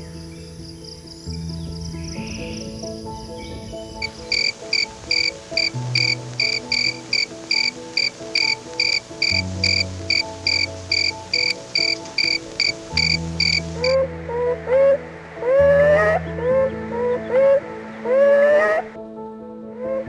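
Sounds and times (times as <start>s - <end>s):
soft background music: 0.0s - 20.0s
cricket chirping: 0.1s - 14.0s.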